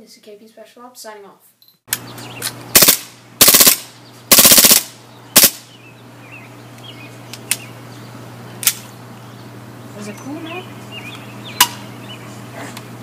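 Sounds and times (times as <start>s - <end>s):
automatic gunfire bursts: 2.7s - 5.6s.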